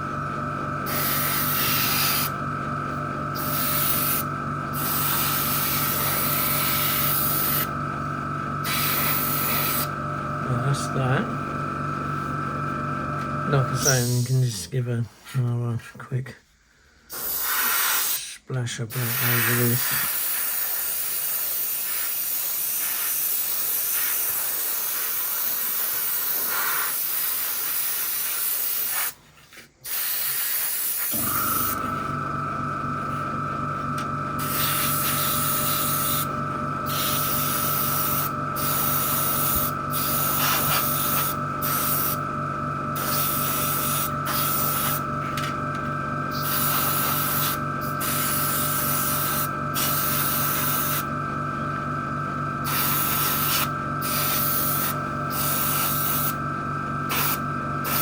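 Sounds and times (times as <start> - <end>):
air compressor motor hum: 0.0 - 14.6, 17.1 - 58.0
airbrush spraying hiss: 0.9 - 2.3, 3.4 - 7.7, 8.6 - 9.9, 13.8 - 14.4, 17.1 - 18.3, 19.0 - 29.2, 29.8 - 31.7, 34.4 - 36.3, 36.9 - 42.2, 43.0 - 45.0, 46.3 - 51.0, 52.6 - 56.4, 57.1 - 58.0.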